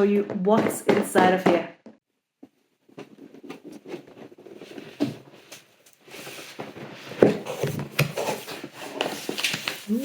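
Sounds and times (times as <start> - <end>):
packaging rustling and scraping: 2.9 - 10.0.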